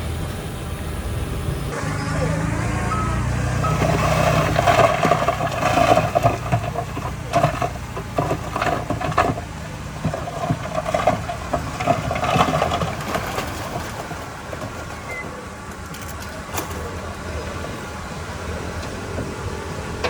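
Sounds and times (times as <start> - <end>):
heavy machinery engine running: 0.0 - 20.0
clanking and rattling: 2.9 - 17.9.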